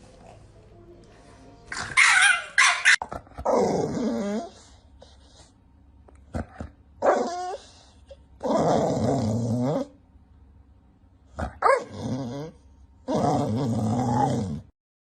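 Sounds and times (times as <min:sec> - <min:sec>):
dog growling: 0:03.0 - 0:04.8, 0:06.2 - 0:10.0, 0:11.3 - 0:14.7.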